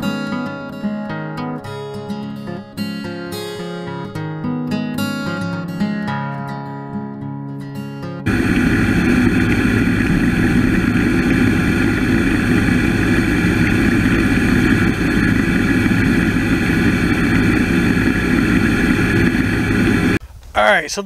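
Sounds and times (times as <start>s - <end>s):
band sawmill running: 8.3s - 20.2s.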